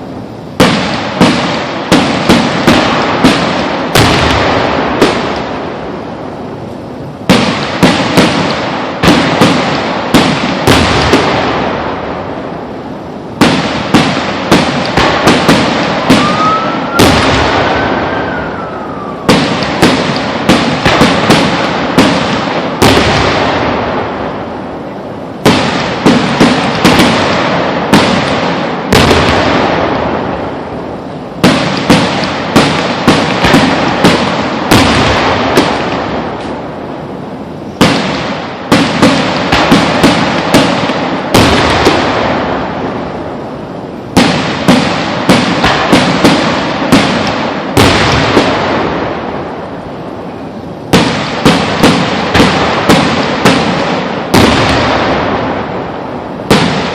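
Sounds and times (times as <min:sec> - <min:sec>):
fireworks bangs rumbling: 0:00.0 - 0:56.9
firework whistle rising and falling: 0:15.8 - 0:19.8.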